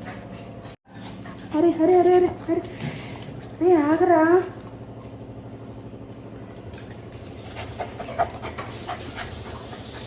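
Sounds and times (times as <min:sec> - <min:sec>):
dog panting: 0:07.2 - 0:10.0.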